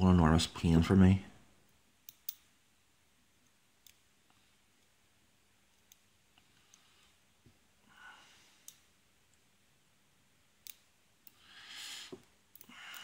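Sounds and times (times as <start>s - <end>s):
soft hiss: 0.2s - 13.0s
lock pick clicking on pins: 2.0s - 2.5s.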